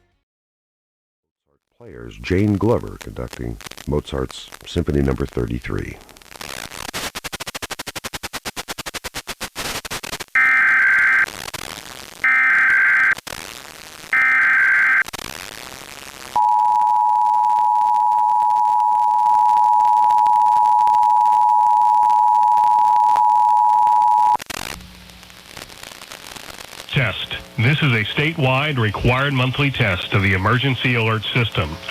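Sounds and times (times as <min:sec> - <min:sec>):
buzzy data bursts: 0:06.3 - 0:16.6.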